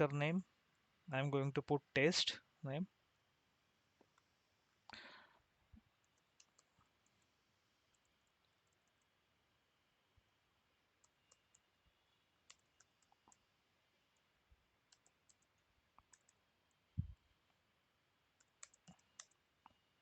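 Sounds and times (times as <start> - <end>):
mouse and keyboard clicks: 12.4 - 13.4, 14.9 - 16.8, 18.4 - 19.4.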